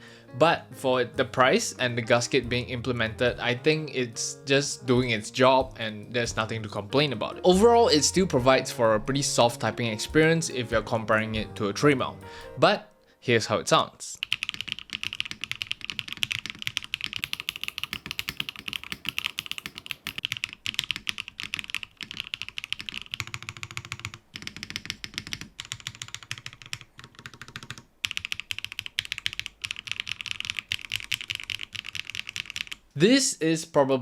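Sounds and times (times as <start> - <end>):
mechanical keyboard typing clacks: 14.2 - 32.8.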